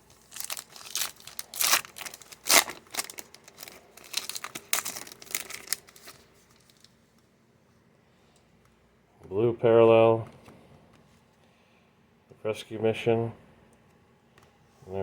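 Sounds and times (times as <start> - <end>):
foil wrapper crinkling and tearing: 0.0 - 7.0.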